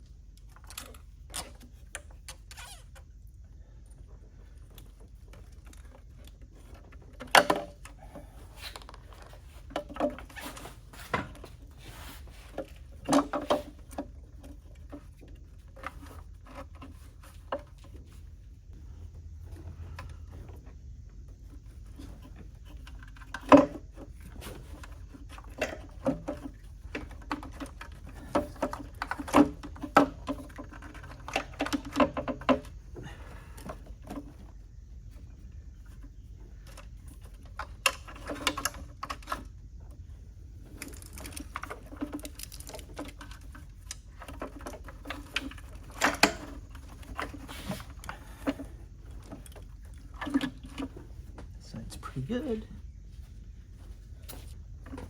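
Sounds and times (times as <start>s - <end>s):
plastic part knocking and scraping: 40.7s - 51.6s.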